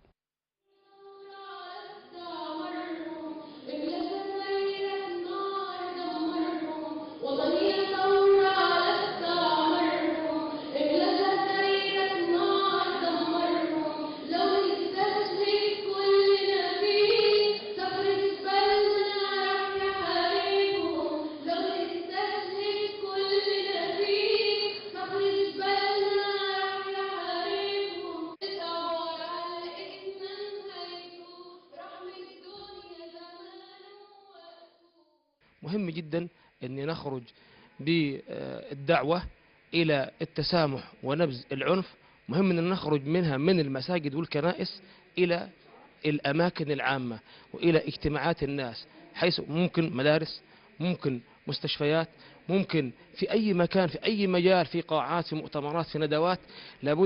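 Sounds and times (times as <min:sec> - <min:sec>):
young voices singing in chorus: 0:01.0 - 0:33.8.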